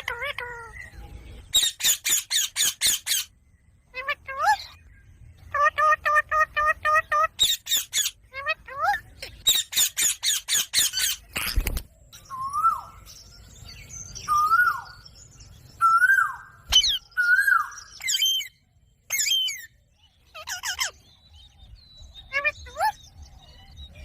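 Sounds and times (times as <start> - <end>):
parrot screeching: 0.0 - 0.7, 20.3 - 21.0.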